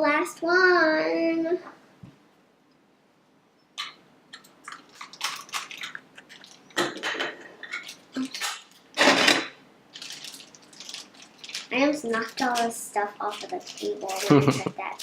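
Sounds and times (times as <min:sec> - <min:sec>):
toy packaging rustling: 0:04.7 - 0:06.8, 0:07.7 - 0:09.1, 0:09.9 - 0:15.0.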